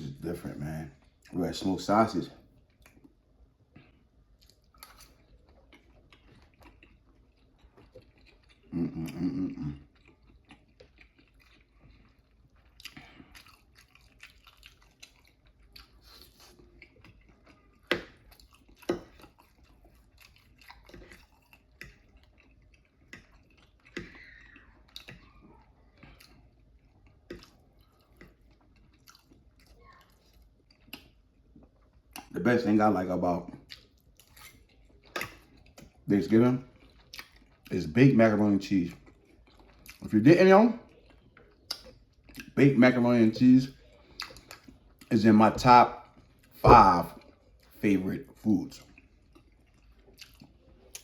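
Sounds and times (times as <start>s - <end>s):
person chewing and biting: 2.6s - 32.4s, 33.5s - 36.1s, 36.7s - 37.7s, 39.0s - 40.1s, 40.9s - 42.6s, 44.1s - 45.1s, 48.8s - 51.0s
wet mouth sounds: 8.2s - 11.2s.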